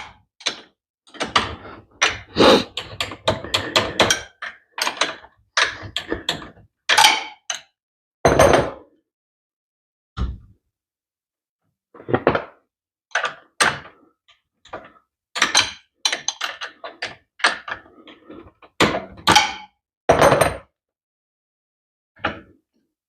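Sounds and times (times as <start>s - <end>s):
tools and metal parts clanking: 0.0s - 7.6s.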